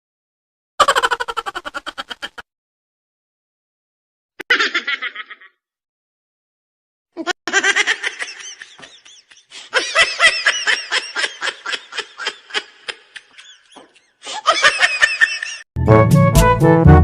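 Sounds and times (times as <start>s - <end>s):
person laughing: 0.8s - 2.4s, 4.4s - 5.6s, 7.2s - 15.7s.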